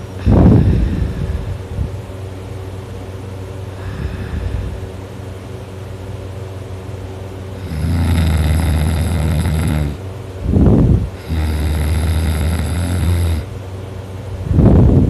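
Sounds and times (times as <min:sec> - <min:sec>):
person snoring loudly: 0:00.2 - 0:01.5, 0:07.6 - 0:10.0, 0:11.2 - 0:13.5
rush of breath: 0:00.2 - 0:02.0, 0:03.8 - 0:05.0.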